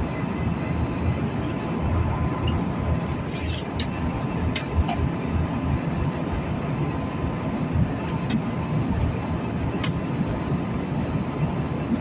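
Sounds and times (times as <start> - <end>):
airliner engines and rushing air: 0.0 - 12.0.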